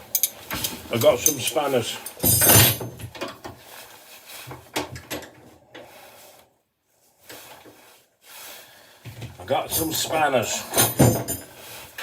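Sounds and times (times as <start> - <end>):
soft handling knocks and rubs: 3.1 - 9.4.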